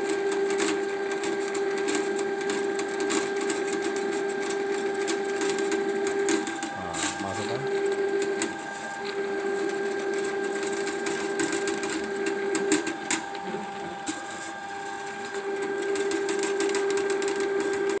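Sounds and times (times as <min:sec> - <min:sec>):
drain-cleaning machine motor hum: 0:06.1 - 0:10.6.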